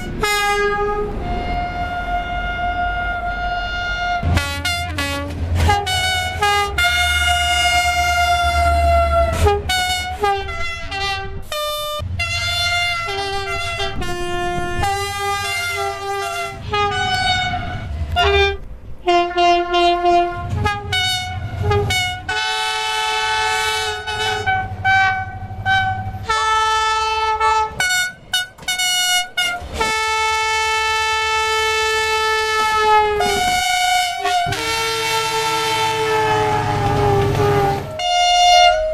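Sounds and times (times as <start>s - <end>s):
low rumble: 0.0s - 9.6s
train horns blasting: 0.0s - 38.9s.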